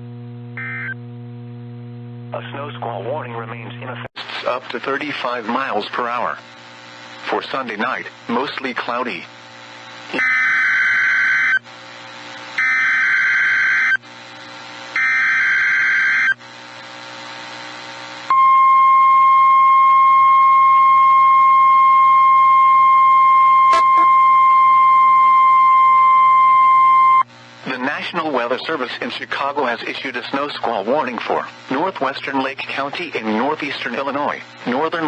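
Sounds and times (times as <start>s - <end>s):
steady warning alarm tone: 10.1s - 11.6s, 12.6s - 14.0s, 15.0s - 16.4s, 18.3s - 27.3s
warbling data tones: 10.1s - 11.6s.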